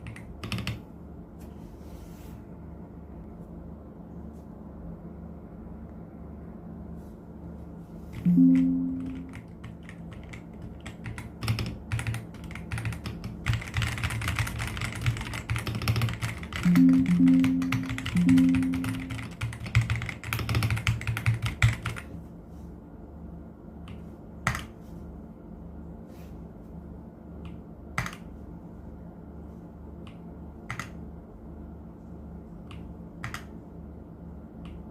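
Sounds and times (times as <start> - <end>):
mechanical keyboard typing: 0.0 - 0.8, 8.2 - 22.1.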